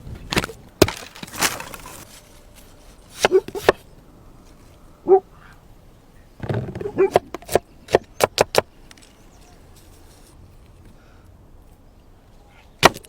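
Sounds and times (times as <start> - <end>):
sharp knocks and cracks: 0.2 - 2.1, 6.4 - 9.1, 12.8 - 13.0.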